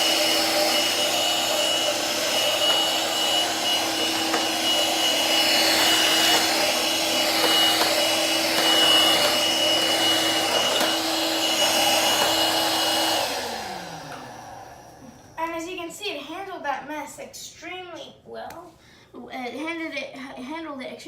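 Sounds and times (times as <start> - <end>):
vacuum cleaner motor whine: 0.0 - 15.4
vacuum motor winding down: 0.0 - 15.4.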